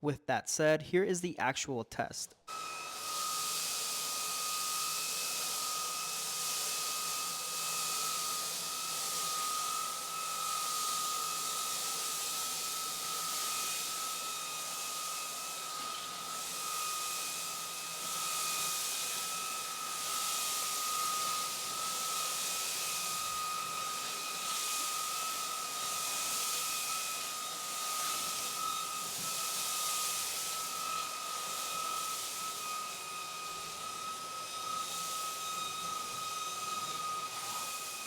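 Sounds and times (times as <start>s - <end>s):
stick vacuum running: 19.4s - 38.0s.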